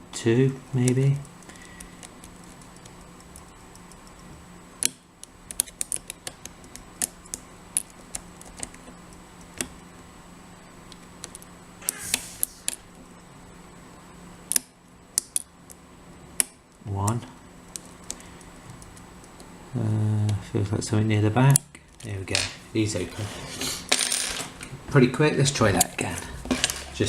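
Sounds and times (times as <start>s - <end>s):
scraping rustle: 23.0s - 23.9s.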